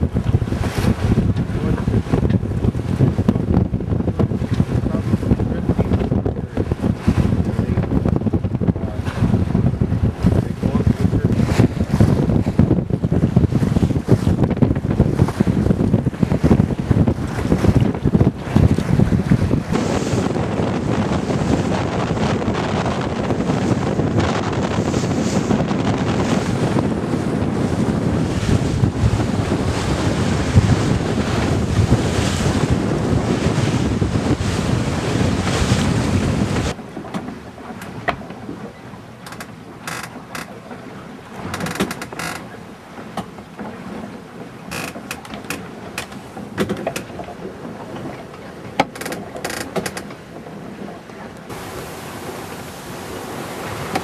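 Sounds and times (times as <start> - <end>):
water rushing along hull: 0.0 - 54.0
wind buffeting microphone: 0.0 - 54.0
clicks and knocks: 41.5 - 42.4.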